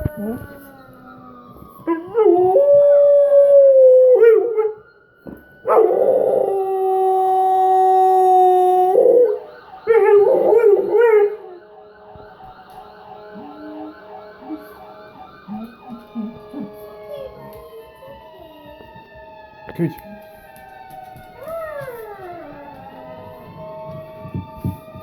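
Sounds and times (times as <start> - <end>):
dog howling: 0.0 - 4.8
siren fast yelp: 0.0 - 24.8
faint siren: 0.0 - 25.0.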